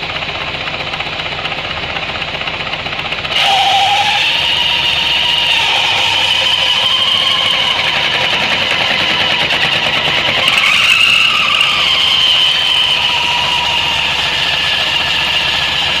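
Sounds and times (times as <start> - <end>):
scooter engine running: 0.0 - 16.0
high-pitched whistle: 3.4 - 16.0.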